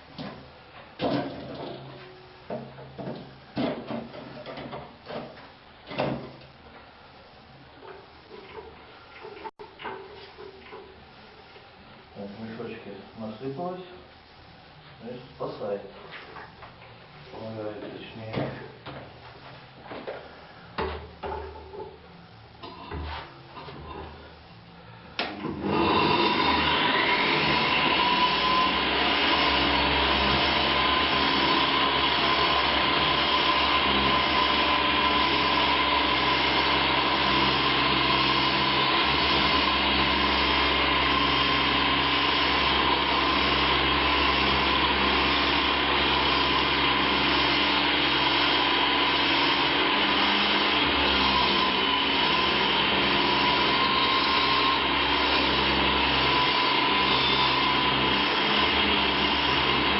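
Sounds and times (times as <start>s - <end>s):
wall chaser motor whining: 23.8s - 59.9s
vacuum extracting dust: 25.1s - 59.9s.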